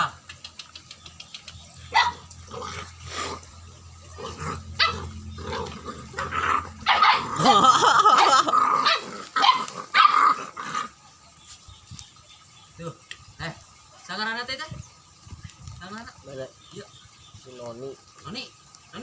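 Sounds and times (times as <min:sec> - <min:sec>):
dog barking and growling: 0:01.8 - 0:11.0.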